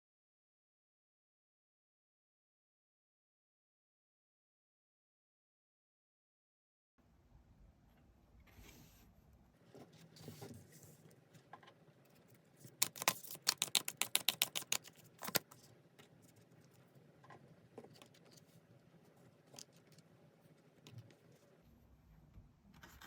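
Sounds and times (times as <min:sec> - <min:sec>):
cards clicking: 0:12.8 - 0:15.5.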